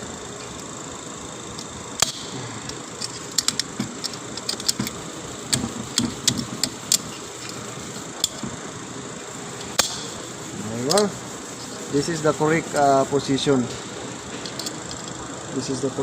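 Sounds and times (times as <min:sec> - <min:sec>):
steady hiss: 0:00.0 - 0:16.0
small metal parts clinking: 0:01.5 - 0:07.6, 0:14.3 - 0:15.2.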